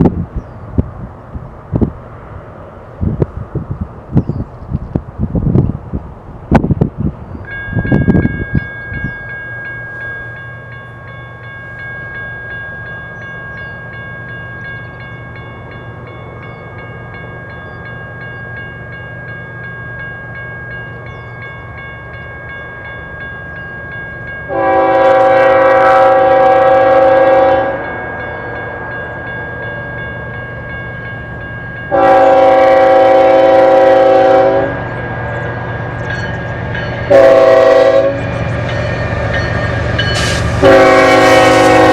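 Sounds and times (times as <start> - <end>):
diesel locomotive engine rumble: 0.0 - 41.9
train horn blasts: 24.5 - 30.0, 31.9 - 35.5, 37.0 - 41.9.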